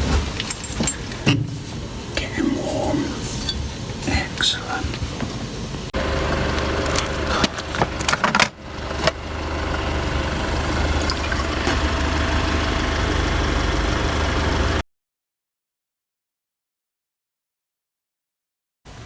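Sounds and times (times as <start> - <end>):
engine humming: 0.0 - 14.8.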